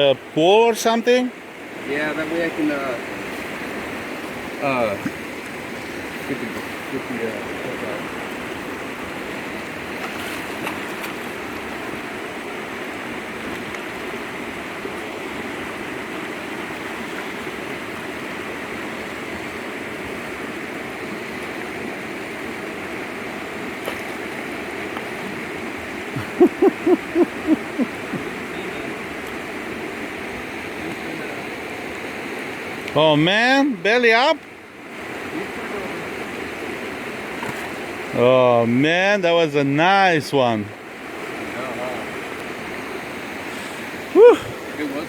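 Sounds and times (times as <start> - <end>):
river rushing: 0.0 - 45.0
short pitched hooting calls: 26.2 - 28.2.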